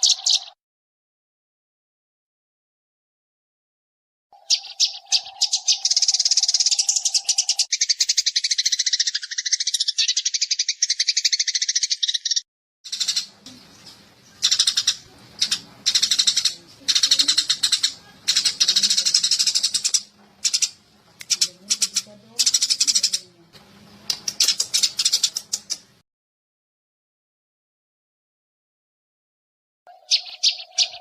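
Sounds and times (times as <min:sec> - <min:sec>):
sparrows chirping: 0:00.0 - 0:00.6, 0:04.3 - 0:26.0, 0:29.9 - 0:31.0
faint low hum: 0:12.9 - 0:26.0.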